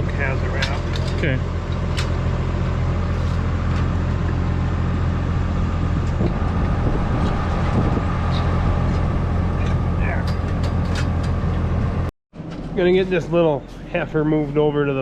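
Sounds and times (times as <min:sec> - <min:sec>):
low machine hum: 0:00.0 - 0:15.0.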